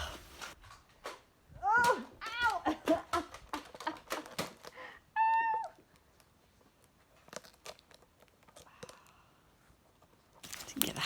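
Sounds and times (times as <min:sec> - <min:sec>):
toy blasters being handled: 0:02.4 - 0:04.8.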